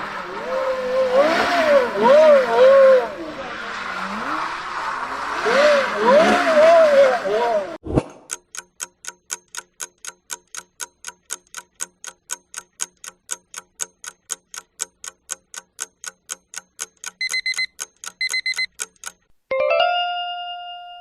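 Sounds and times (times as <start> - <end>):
clock ticking: 8.2 - 19.3
electronic alarm beeps: 17.2 - 18.7.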